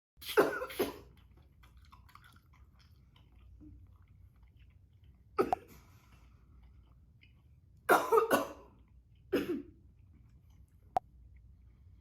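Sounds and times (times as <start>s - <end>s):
person coughing: 0.2s - 1.1s, 5.4s - 5.7s, 7.9s - 8.7s, 9.3s - 9.8s
person chewing softly: 0.2s - 12.0s.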